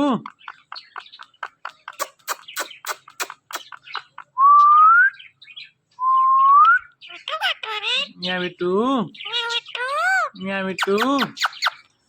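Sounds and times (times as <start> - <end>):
parrot clicking chirps: 0.2 - 4.4, 10.8 - 11.9.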